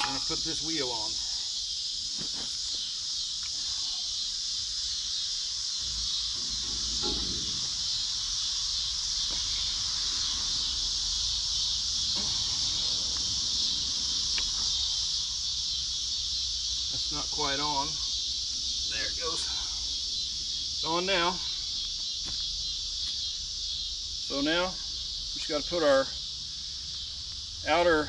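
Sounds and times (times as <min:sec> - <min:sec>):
crickets chirring: 0:00.0 - 0:28.0
metal knocks and scrapes: 0:05.7 - 0:15.6.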